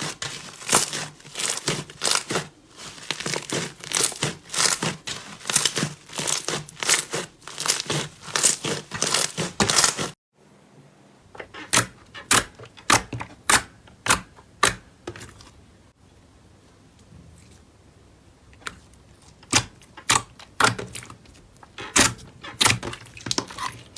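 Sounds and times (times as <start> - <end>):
crunchy slime crackling: 0.0 - 10.2.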